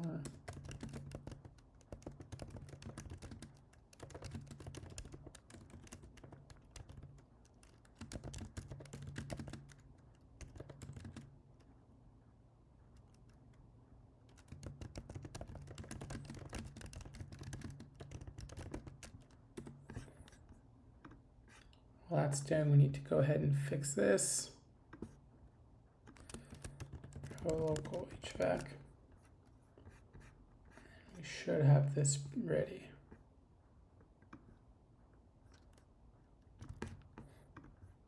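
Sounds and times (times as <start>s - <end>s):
computer keyboard typing: 0.0s - 11.8s, 12.9s - 13.6s, 14.2s - 20.4s, 26.1s - 28.9s, 36.5s - 37.9s.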